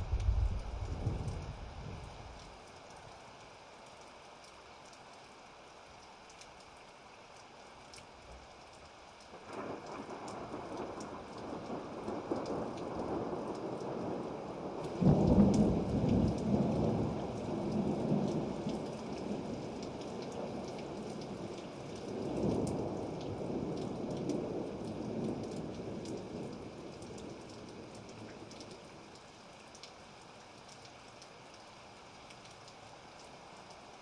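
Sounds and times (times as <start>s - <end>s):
thunder rumbling: 0.0s - 2.5s
steady rain: 0.0s - 34.0s.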